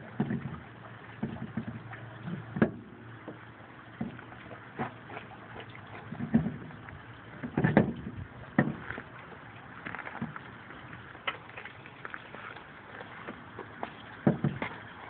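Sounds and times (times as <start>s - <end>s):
knocks and clanks on car wheel: 0.2s - 0.6s, 1.2s - 2.8s, 6.1s - 6.7s, 7.4s - 9.0s, 13.3s - 14.8s.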